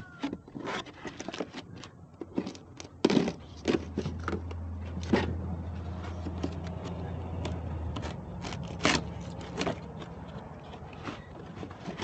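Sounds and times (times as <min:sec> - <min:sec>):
parts knocking and clunking: 0:00.0 - 0:12.0.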